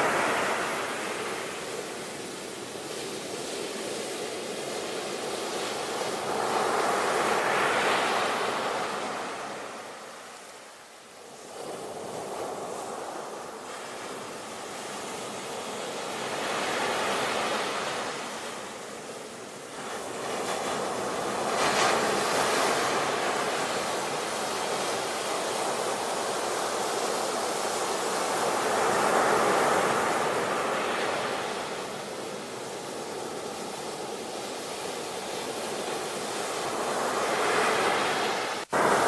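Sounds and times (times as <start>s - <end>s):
sea waves breaking on shore: 0.0s - 39.0s.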